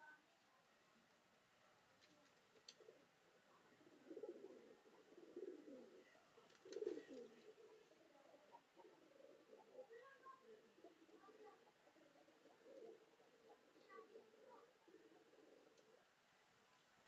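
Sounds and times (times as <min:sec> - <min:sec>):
faint clicks: 0:02.0 - 0:02.9, 0:06.4 - 0:07.5, 0:15.7 - 0:16.0
pigeons cooing: 0:02.5 - 0:16.2.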